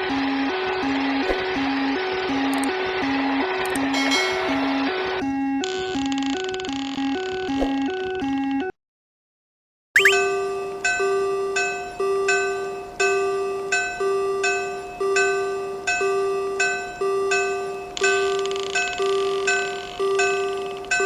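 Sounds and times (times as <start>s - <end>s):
railroad crossing alarm bell: 3.9s - 4.8s, 10.1s - 21.0s.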